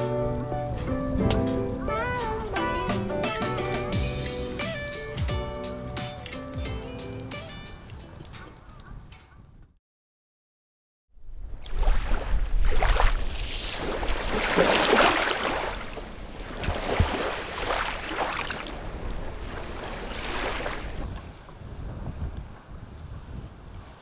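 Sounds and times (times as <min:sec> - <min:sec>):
strong wind gusting: 0:00.0 - 0:09.6, 0:15.4 - 0:24.0
wind buffeting microphone: 0:00.0 - 0:09.7, 0:11.3 - 0:24.0.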